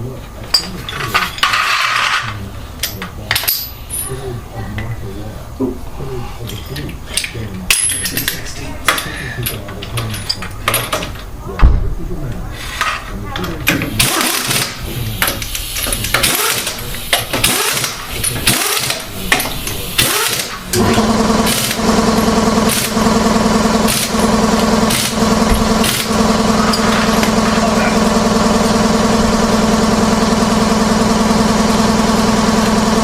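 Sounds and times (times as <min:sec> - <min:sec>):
car engine starting and idling: 0:13.7 - 0:33.0
knocks and clatter: 0:23.8 - 0:27.5.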